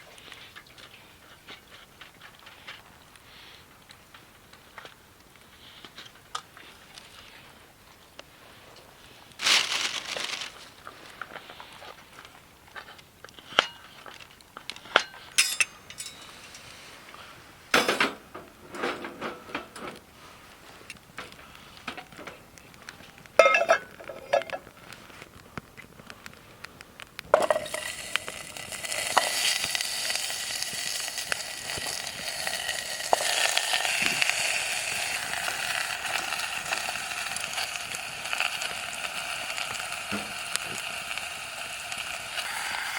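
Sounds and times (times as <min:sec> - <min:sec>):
metal cookware clinking and scraping: 0:15.0 - 0:16.8, 0:23.4 - 0:24.6
food sizzling in hot pan: 0:27.3 - 0:42.9.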